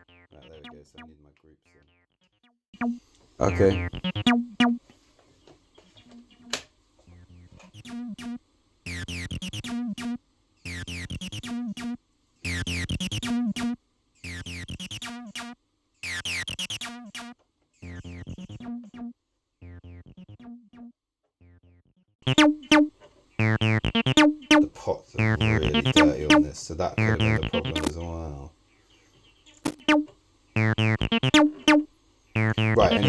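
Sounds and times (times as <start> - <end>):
synthesizer notes with filter sweep: 2.8 - 4.8, 8.9 - 10.1, 10.7 - 11.9, 12.5 - 15.5, 17.9 - 18.7, 22.3 - 27.9, 29.7 - 33.0.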